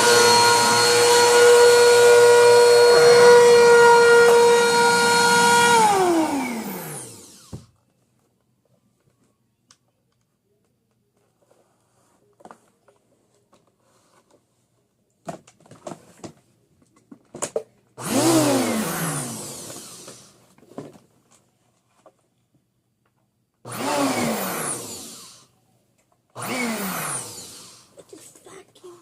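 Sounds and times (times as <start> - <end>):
vacuum cleaner motor winding down: 0.0 - 7.7, 18.0 - 20.4, 23.7 - 25.5, 26.4 - 27.9.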